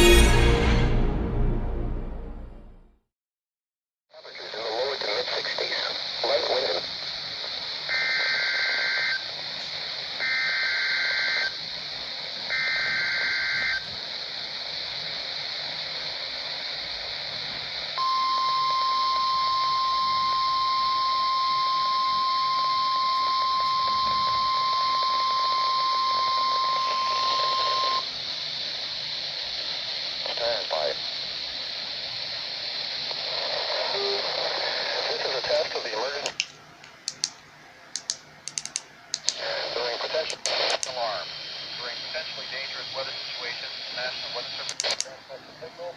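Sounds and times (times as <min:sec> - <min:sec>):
radio hiss: 0:04.1 - 0:45.9
steady alarm tone: 0:12.5 - 0:13.9, 0:18.0 - 0:28.8.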